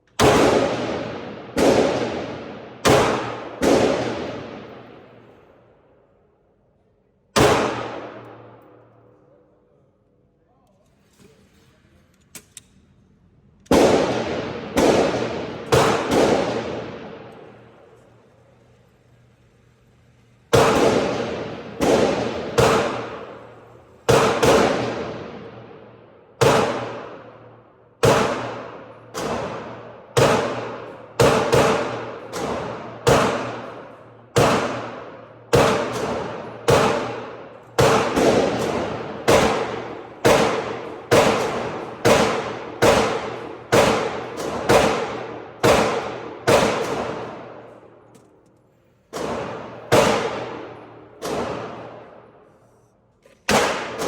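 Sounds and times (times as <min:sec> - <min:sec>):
pistol shots echoing: 0:00.1 - 0:05.7, 0:07.4 - 0:08.9, 0:13.7 - 0:17.9, 0:20.5 - 0:48.1, 0:49.1 - 0:52.5, 0:53.5 - 0:54.0.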